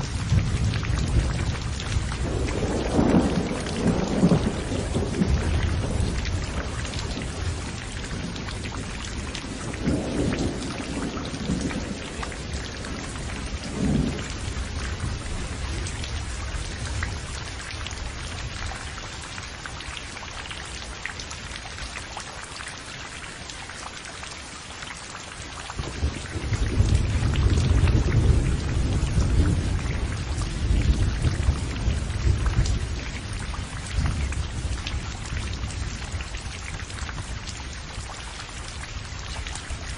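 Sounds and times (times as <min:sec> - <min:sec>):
thunder rumbling: 0:00.0 - 0:18.7, 0:25.8 - 0:38.1
heavy rain falling: 0:00.0 - 0:39.9.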